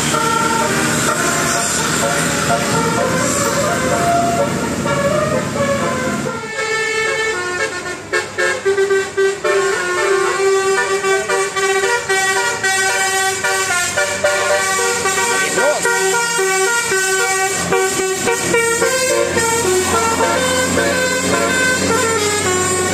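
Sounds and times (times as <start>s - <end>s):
bus multi-tone horn tune: 0.0s - 22.9s
vehicle running noise: 0.0s - 22.9s.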